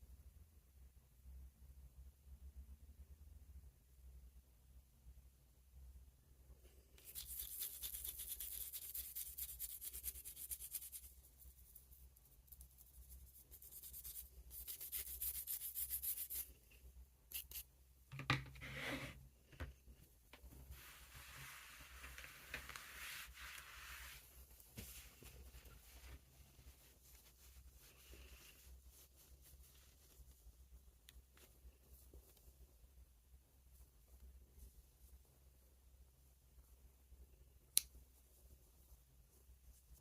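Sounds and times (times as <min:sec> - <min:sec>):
scratchy scrubbing on pocket knife: 0:07.0 - 0:11.0, 0:13.6 - 0:16.5.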